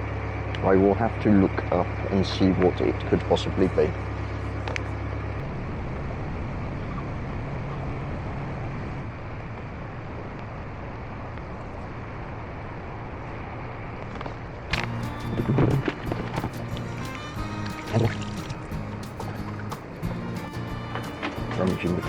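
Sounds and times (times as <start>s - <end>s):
low hum: 0.0s - 13.8s, 14.7s - 22.0s
background music: 14.7s - 22.0s
boat engine running: 14.7s - 22.0s.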